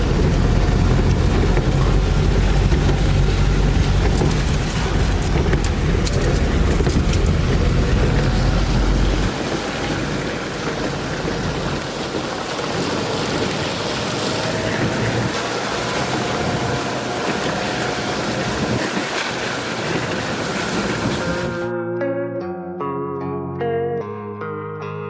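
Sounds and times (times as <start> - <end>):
vehicle interior road noise: 0.0 - 21.7
guitar music: 21.3 - 25.0.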